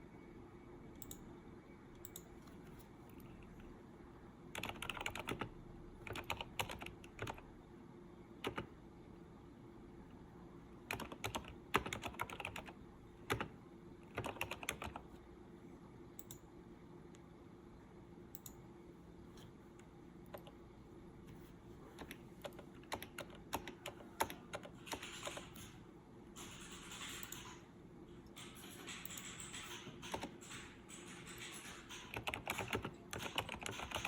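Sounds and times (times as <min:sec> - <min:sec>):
keyboard typing: 0:01.0 - 0:01.2, 0:02.0 - 0:03.6, 0:04.5 - 0:07.5, 0:08.4 - 0:08.8, 0:10.9 - 0:15.2, 0:20.3 - 0:20.6, 0:21.9 - 0:34.0.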